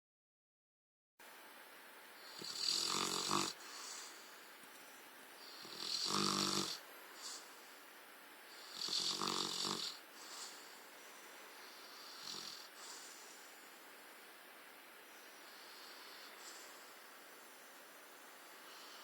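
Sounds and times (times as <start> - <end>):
dog snoring: 2.2 - 4.2, 5.4 - 7.7, 8.5 - 10.8, 11.6 - 13.6, 15.1 - 17.7.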